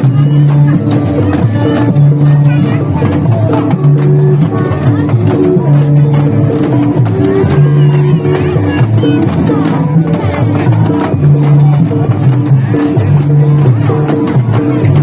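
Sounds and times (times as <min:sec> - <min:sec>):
jingly percussion: 0:00.0 - 0:15.0.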